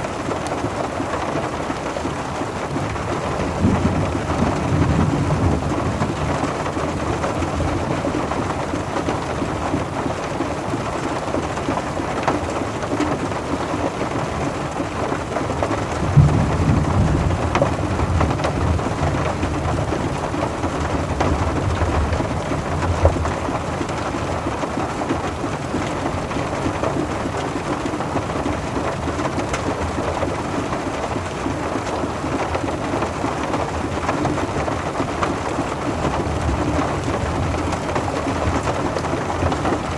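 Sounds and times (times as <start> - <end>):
rain falling on a car: 0.0 - 39.9
thunder rumbling: 2.8 - 8.7, 15.8 - 24.0.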